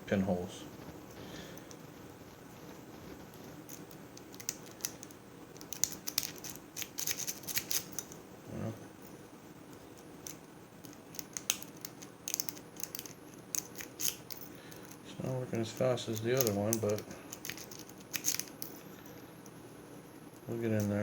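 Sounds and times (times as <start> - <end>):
lock pick scraping and clicking: 3.7 - 8.2, 10.2 - 15.0, 16.1 - 18.9.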